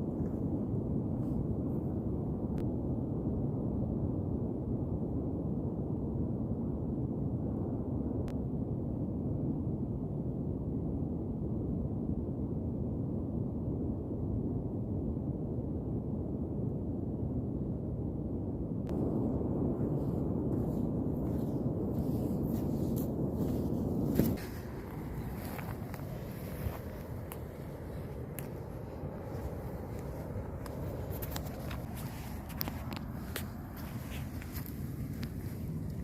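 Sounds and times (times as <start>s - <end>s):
wind buffeting microphone: 18.8s - 36.0s.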